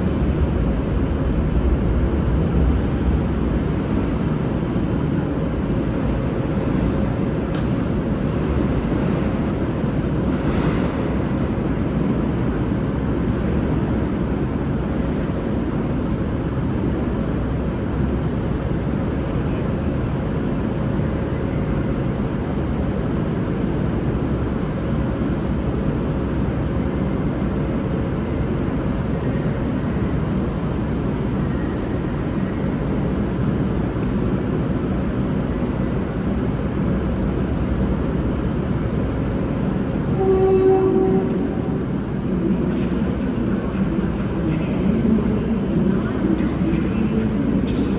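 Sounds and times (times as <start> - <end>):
diesel railcar engine rumble: 0.0 - 47.9
sharp click: 7.5 - 7.9.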